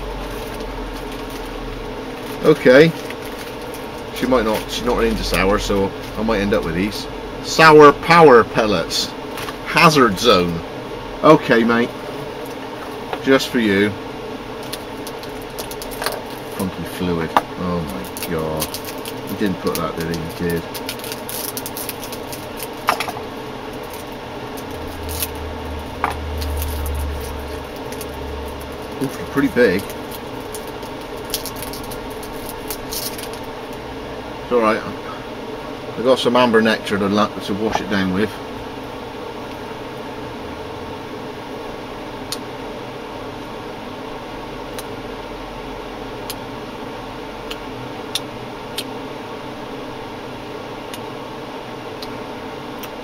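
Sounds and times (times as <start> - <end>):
sweet packet rustling: 0.0 - 6.4, 14.6 - 33.8
low steady hum: 0.0 - 53.0.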